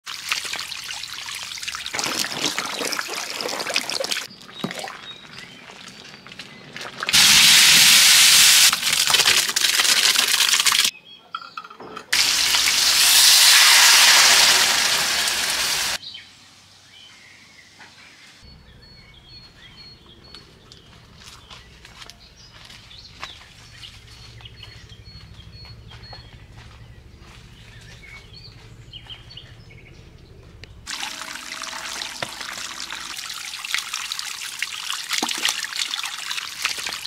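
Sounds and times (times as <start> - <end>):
rushing water: 0.0 - 5.6, 30.9 - 37.0.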